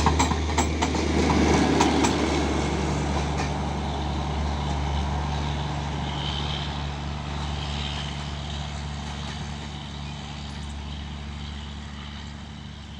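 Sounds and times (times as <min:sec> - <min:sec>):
train rumbling past: 0:00.0 - 0:12.9.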